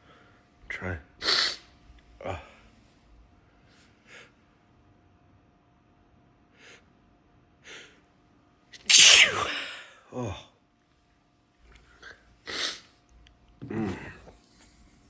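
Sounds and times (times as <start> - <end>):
brief voiced sound: 8.8 - 9.6
man sharply inhaling: 8.8 - 9.8.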